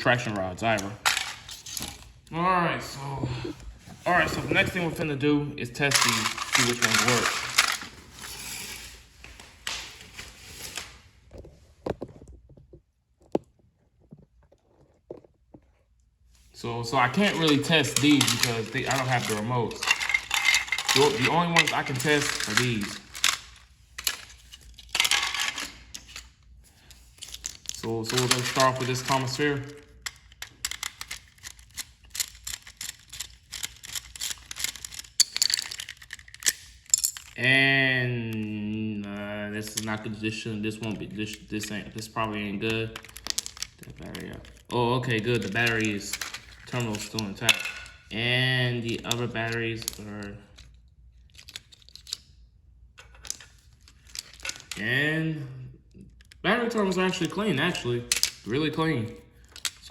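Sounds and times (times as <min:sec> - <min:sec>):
rustling handling noise: 0:00.1 - 0:02.3, 0:05.8 - 0:37.4, 0:39.1 - 0:48.2, 0:48.8 - 0:52.3, 0:53.0 - 0:54.9
plastic toy train rattling: 0:00.3 - 0:02.1, 0:05.8 - 0:07.9, 0:16.8 - 0:37.4, 0:40.8 - 0:48.0, 0:48.9 - 0:52.3, 0:53.0 - 0:54.9, 0:56.2 - 0:58.5
plastic toy trains tapping: 0:05.9 - 0:07.8.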